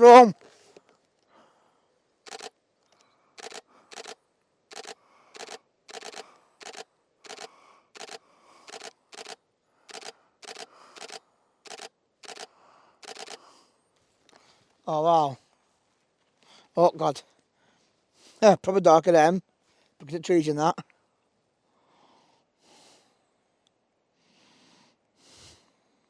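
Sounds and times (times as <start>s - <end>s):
camera shutter clicks: 2.3s - 2.6s, 3.4s - 13.4s.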